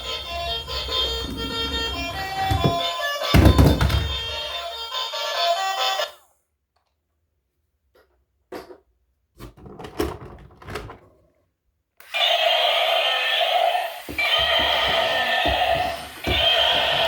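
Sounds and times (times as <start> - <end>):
knocks and handling scrapes: 0.3 - 2.9.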